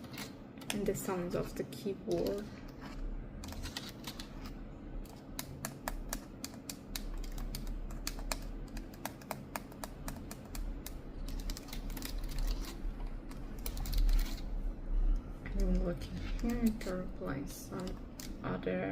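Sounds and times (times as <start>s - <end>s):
keyboard typing with fingernails: 2.1s - 14.4s, 17.7s - 18.4s.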